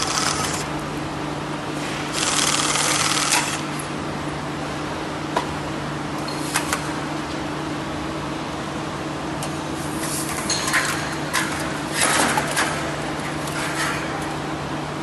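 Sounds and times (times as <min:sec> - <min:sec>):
machine motor hum: 0:00.0 - 0:04.2.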